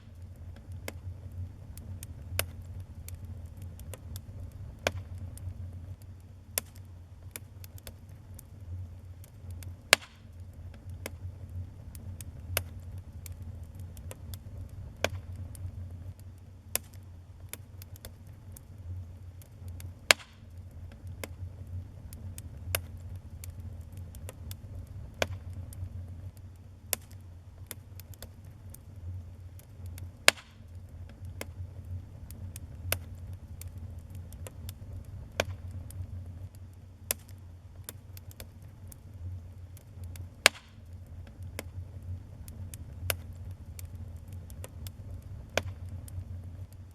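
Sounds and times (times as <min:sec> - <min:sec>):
wood fire crackling: 0:00.0 - 0:46.9.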